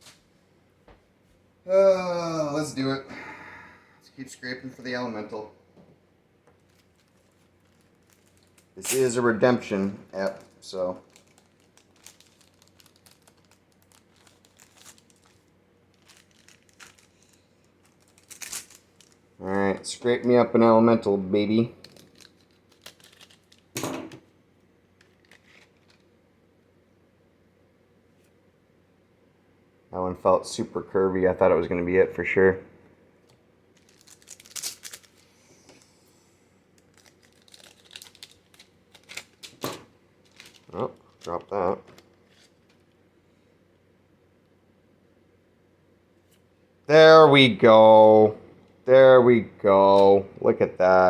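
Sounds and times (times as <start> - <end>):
cards being handled: 6.5 - 19.8, 21.8 - 24.2, 25.0 - 26.1
wrapper crinkling and tearing: 6.5 - 19.8, 21.8 - 23.8, 25.0 - 26.1, 33.2 - 35.4, 36.7 - 42.9.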